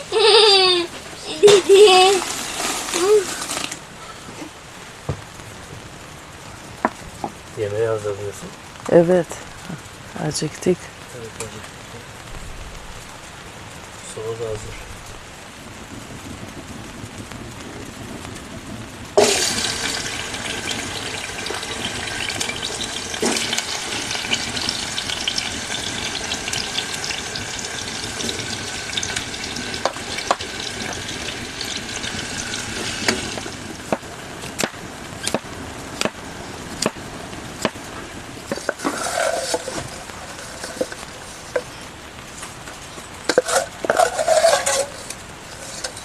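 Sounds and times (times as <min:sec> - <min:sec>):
food sizzling in a hot pan: 0:00.0 - 0:03.8, 0:19.2 - 0:41.8, 0:43.2 - 0:46.0.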